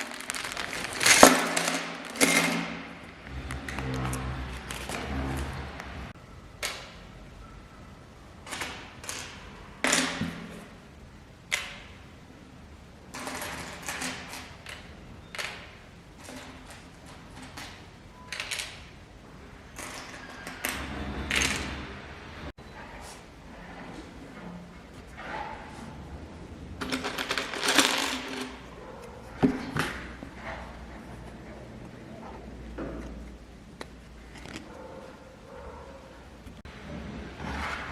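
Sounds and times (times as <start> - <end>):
plastic pieces handled: 0.0 - 5.0, 26.8 - 30.2
rustling: 0.0 - 5.6.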